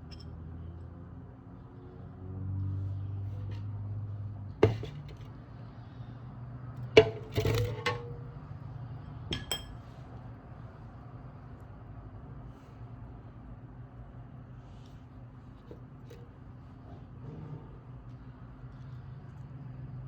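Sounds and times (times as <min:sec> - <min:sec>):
low steady hum: 0:02.6 - 0:20.0
glass and kitchenware clinking: 0:09.3 - 0:09.8.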